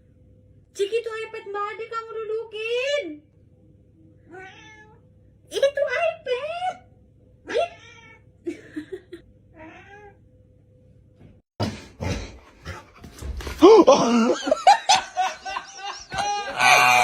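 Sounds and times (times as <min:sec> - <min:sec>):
cat meowing: 0:04.3 - 0:05.0, 0:09.6 - 0:10.2.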